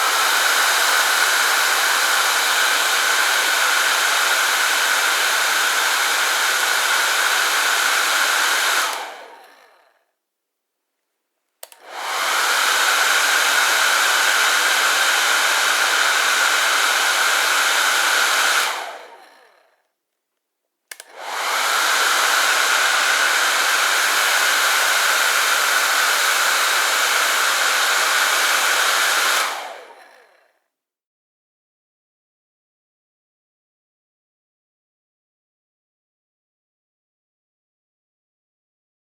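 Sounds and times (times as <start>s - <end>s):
hair dryer blowing with whine: 0.0s - 9.8s, 11.6s - 19.5s, 20.9s - 30.4s
hair dryer switch click: 8.6s - 9.2s, 11.6s - 12.3s, 20.9s - 22.6s.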